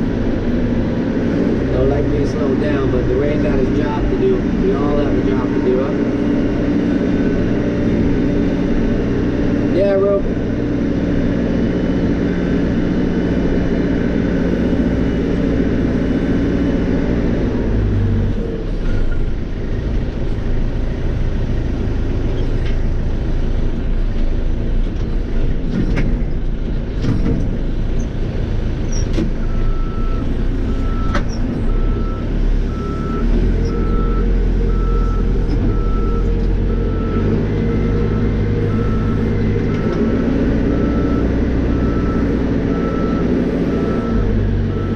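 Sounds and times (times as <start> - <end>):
diesel engine running: 0.0 - 44.9
reversing alarm beeps: 31.8 - 39.8, 40.8 - 44.9.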